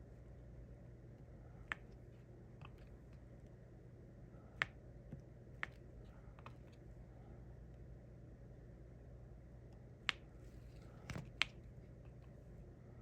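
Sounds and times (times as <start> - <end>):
faint low hum: 0.0 - 13.0.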